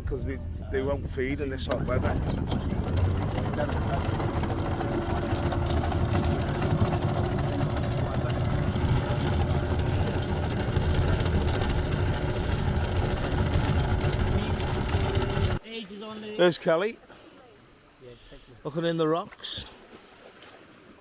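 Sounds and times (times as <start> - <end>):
boat engine rumbling: 0.0 - 15.6.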